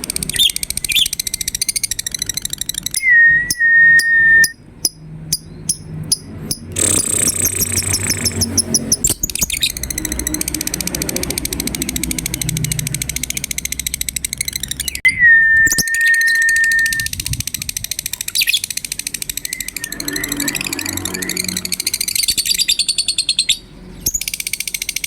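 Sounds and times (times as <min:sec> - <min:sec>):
fast chattering bird trill: 0:00.0 - 0:15.0, 0:15.6 - 0:25.0
sharp bird chirps: 0:00.0 - 0:25.0
high bird whistle: 0:00.3 - 0:05.0, 0:14.5 - 0:17.2.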